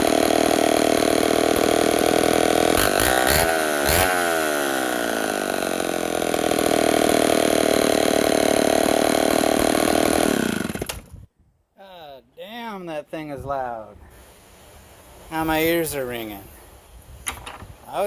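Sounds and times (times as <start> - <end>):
chainsaw engine idling: 0.0 - 11.1.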